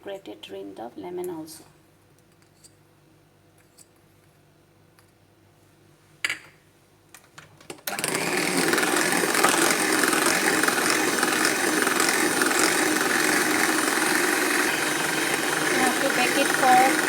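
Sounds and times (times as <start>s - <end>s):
electric mixer running: 7.9s - 17.0s.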